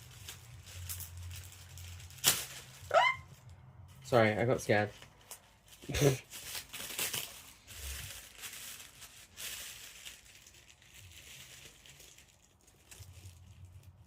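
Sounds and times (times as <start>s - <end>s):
packaging crinkling: 0.0s - 3.6s, 4.7s - 14.0s.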